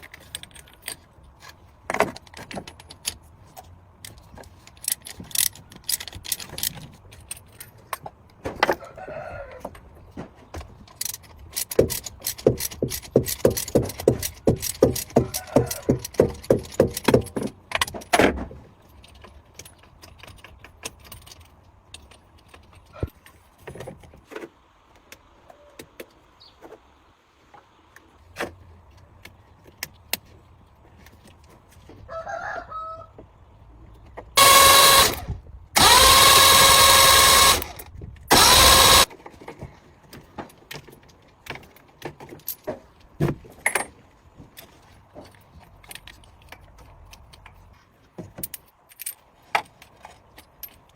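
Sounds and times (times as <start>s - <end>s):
motorised tool running: 34.4s - 39.1s.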